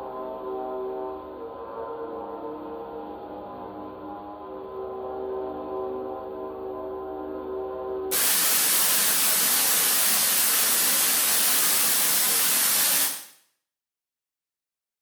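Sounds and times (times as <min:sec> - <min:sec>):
television static hiss: 0:08.2 - 0:13.3.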